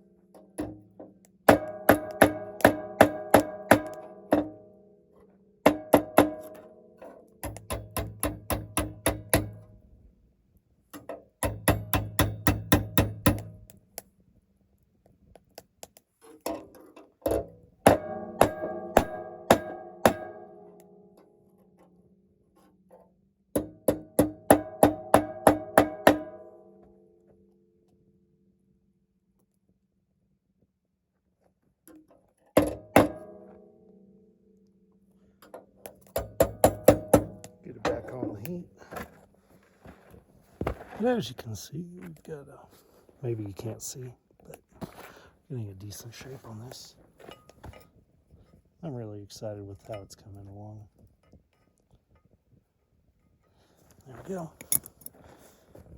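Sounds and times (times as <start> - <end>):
hammer striking hot metal: 1.5 - 4.6, 5.6 - 6.6, 7.4 - 9.6, 11.4 - 13.7, 17.8 - 21.0, 23.6 - 26.4, 36.1 - 38.5.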